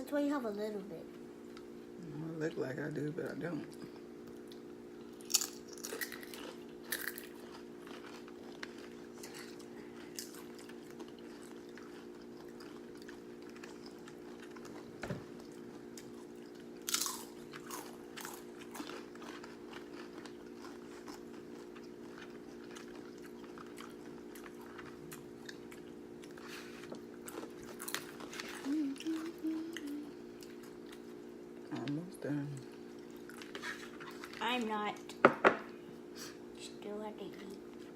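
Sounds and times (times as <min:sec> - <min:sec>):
steady low hum: 0:00.0 - 0:37.9
chewing crunchy chips: 0:03.7 - 0:32.0, 0:32.6 - 0:35.2.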